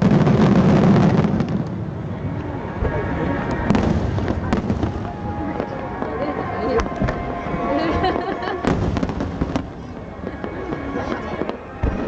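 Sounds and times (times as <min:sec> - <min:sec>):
fireworks boom: 0:00.0 - 0:02.2, 0:03.6 - 0:07.3, 0:07.9 - 0:12.0
crowd voices: 0:00.0 - 0:12.0
fireworks cracking: 0:00.0 - 0:12.0.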